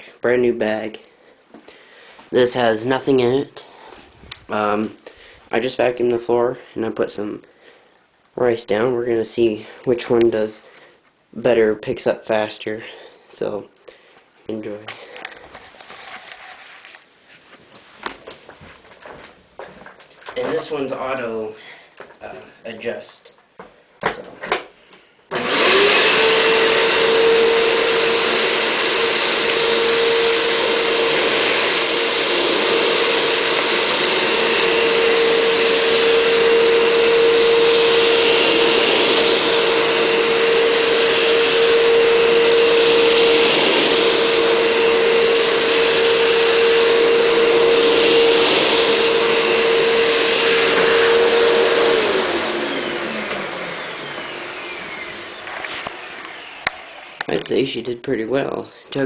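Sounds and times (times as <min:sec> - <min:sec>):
vacuum cleaner motor whine: 0:25.3 - 0:57.3
vacuum motor winding down: 0:25.3 - 0:57.3.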